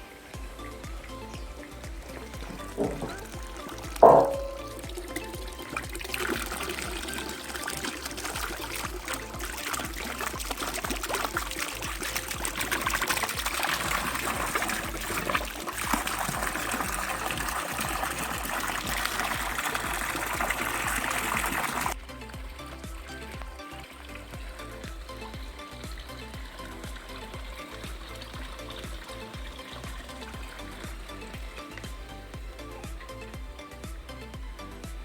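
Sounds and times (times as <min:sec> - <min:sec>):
water pouring into water: 0:00.0 - 0:35.0.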